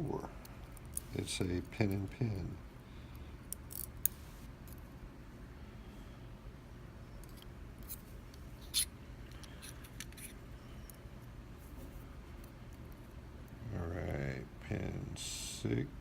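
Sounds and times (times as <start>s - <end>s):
steady low hum: 0.0s - 16.0s
small metal pins clicking: 3.5s - 4.2s.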